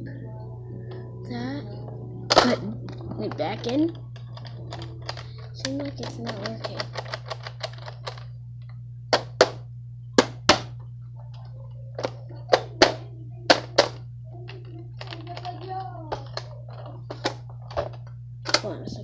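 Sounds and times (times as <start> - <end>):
low hum: 0.0 - 19.0
toy blaster mechanism clicking: 3.6 - 8.3.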